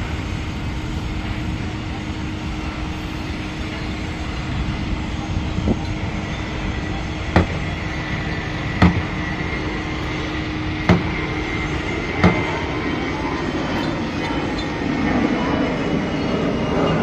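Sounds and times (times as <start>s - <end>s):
steady mechanical hum: 0.0s - 17.0s
sharp knocks: 10.9s - 11.2s.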